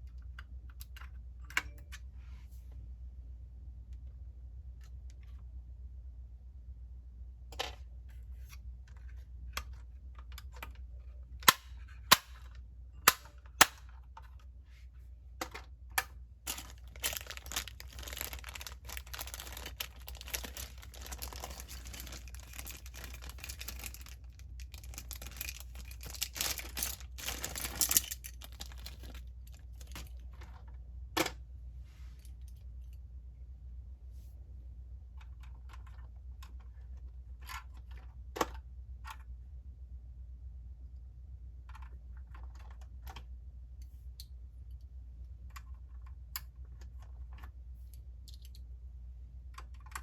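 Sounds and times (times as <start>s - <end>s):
steady low hum: 0.0s - 37.4s
plastic rustling and crinkling: 16.5s - 30.6s.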